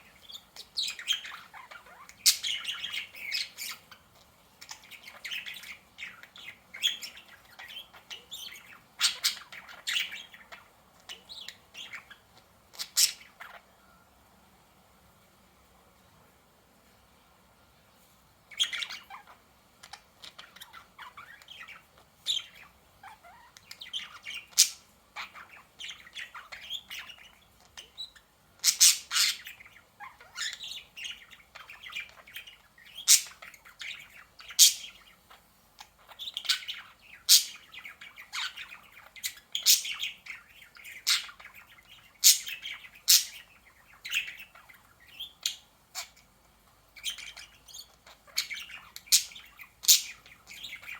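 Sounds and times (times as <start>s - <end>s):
budgies chirping and chattering: 0.0s - 13.7s, 18.5s - 50.9s.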